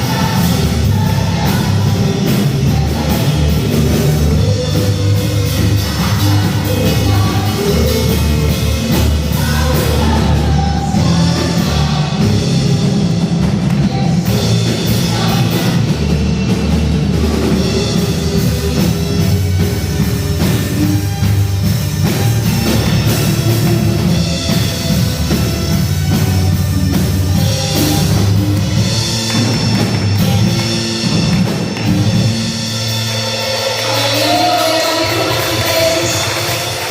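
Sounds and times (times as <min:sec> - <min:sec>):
person singing: 0:00.0 - 0:19.4, 0:33.8 - 0:36.9
drum kit: 0:00.0 - 0:36.9
worship band playing rock song: 0:00.0 - 0:36.9.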